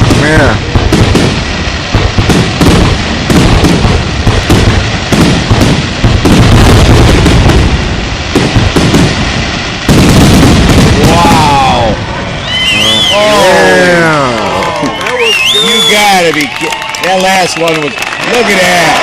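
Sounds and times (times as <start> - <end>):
firework shells booming: 0.0 - 13.2
firework crackling: 0.0 - 19.0.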